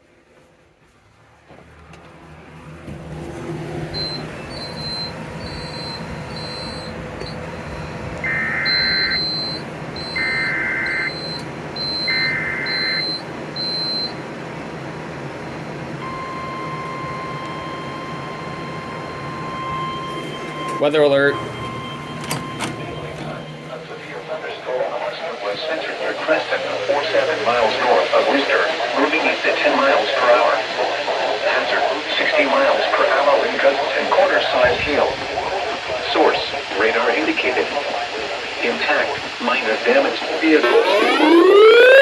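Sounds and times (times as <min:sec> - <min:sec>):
weather radio alarm tone: 0:03.9 - 0:14.2, 0:16.0 - 0:42.0
screeching data bursts: 0:04.0 - 0:07.5, 0:08.2 - 0:13.2, 0:40.3 - 0:42.0
short high-pitched beeps: 0:04.0 - 0:14.1
steady hiss and hum: 0:04.2 - 0:13.5, 0:22.8 - 0:42.0.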